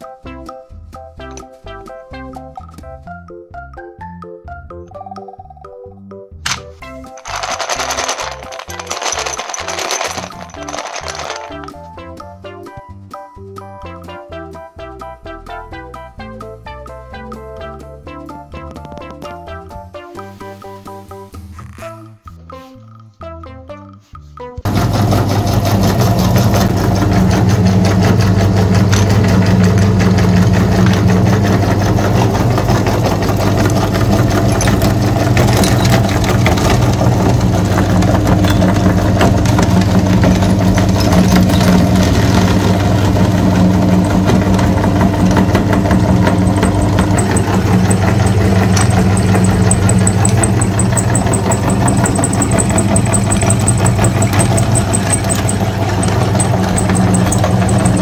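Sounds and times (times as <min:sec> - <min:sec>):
motor running with rattle: 0:06.5 - 0:11.8, 0:24.6 - 0:58.0.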